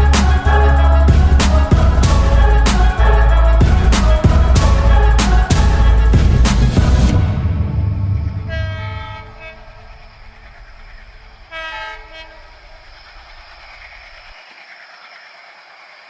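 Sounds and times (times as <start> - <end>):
train horn blasts: 0.0 - 10.7, 11.5 - 12.9
low train rumble: 0.0 - 14.3.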